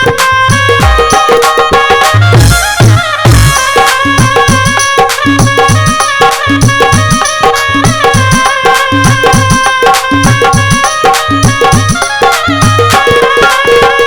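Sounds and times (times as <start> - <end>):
fast hand drum rhythm: 0.0 - 14.0
sustained melody line: 0.0 - 14.0.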